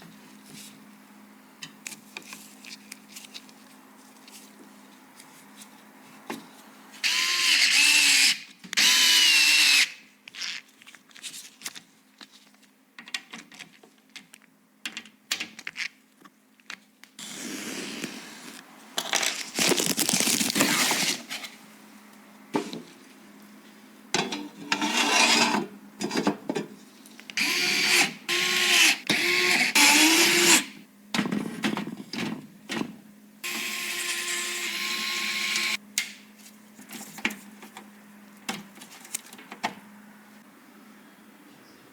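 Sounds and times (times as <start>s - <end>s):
electric screwdriver whining: 7.0s - 10.0s, 27.4s - 30.6s, 33.5s - 35.8s.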